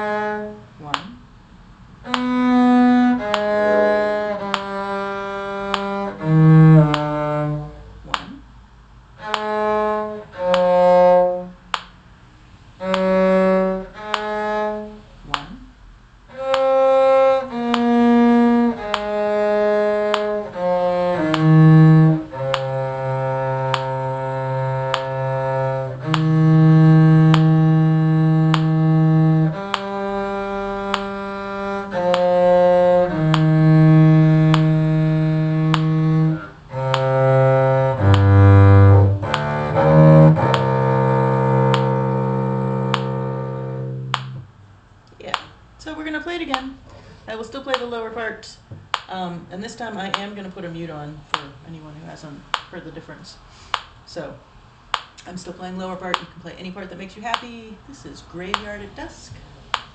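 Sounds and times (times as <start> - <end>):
bowed strings playing slow piece: 0.0 - 1.2, 2.0 - 8.2, 9.2 - 11.7, 12.7 - 15.4, 16.3 - 44.7
low cello part: 0.0 - 8.4, 9.1 - 44.7.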